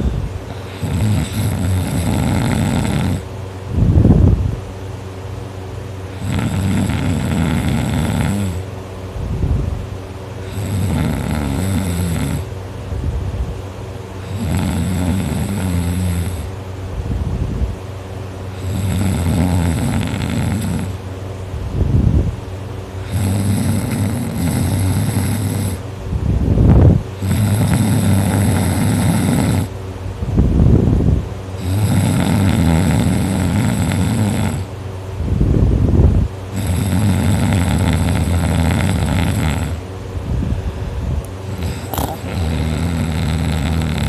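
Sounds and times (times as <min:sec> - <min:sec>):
person snoring loudly: 0:00.0 - 0:03.3, 0:06.1 - 0:08.7, 0:10.4 - 0:12.5, 0:14.2 - 0:16.5, 0:18.5 - 0:21.0, 0:23.0 - 0:25.8, 0:27.2 - 0:29.7, 0:31.6 - 0:34.7, 0:36.5 - 0:39.8, 0:41.4 - 0:44.0
hissing breaths: 0:36.6 - 0:44.0.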